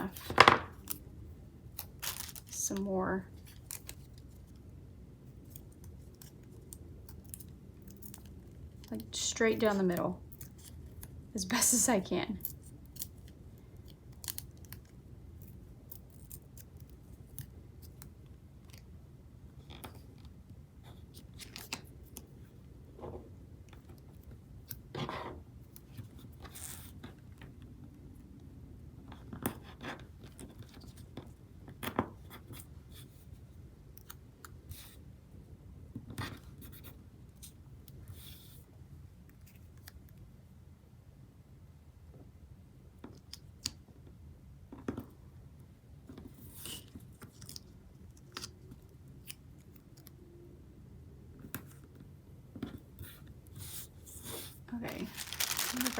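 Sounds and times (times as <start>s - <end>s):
tape and paper scratching: 54.2s - 55.9s.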